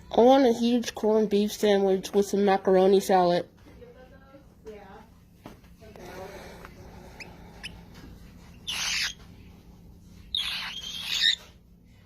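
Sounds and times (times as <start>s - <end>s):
parrot screeching: 8.5s - 9.2s, 10.3s - 11.6s.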